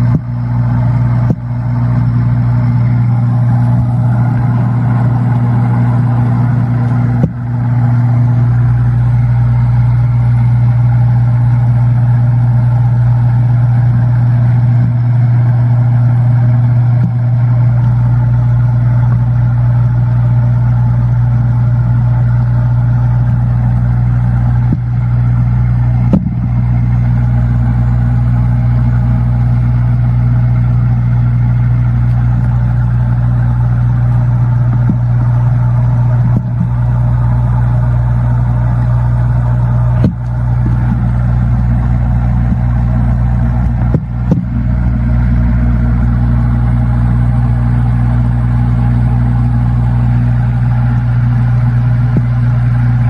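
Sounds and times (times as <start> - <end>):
low motor-like hum: 0.0 - 53.0
short knocks: 26.1 - 26.5.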